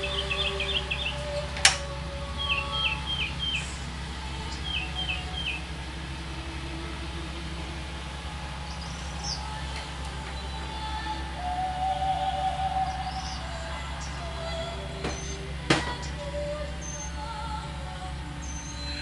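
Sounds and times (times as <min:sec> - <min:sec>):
bird chirping: 0:00.0 - 0:05.8, 0:08.6 - 0:17.3, 0:18.4 - 0:19.0
low hum: 0:00.0 - 0:19.0.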